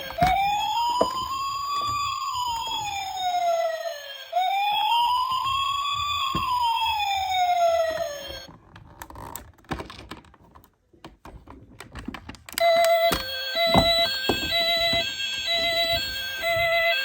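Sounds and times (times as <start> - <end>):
ambulance siren wailing: 0.0 - 8.5, 12.6 - 17.0.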